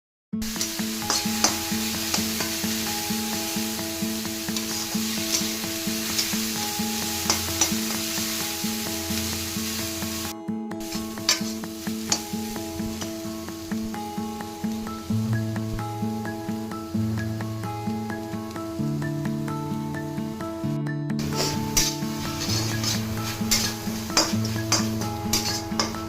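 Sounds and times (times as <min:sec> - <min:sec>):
food sizzling in a pan: 0:00.4 - 0:18.8, 0:21.2 - 0:26.0
background music with beat: 0:00.4 - 0:26.0
utensil clicking on pan: 0:00.5 - 0:02.9, 0:04.4 - 0:08.5, 0:10.9 - 0:13.2, 0:21.2 - 0:26.0.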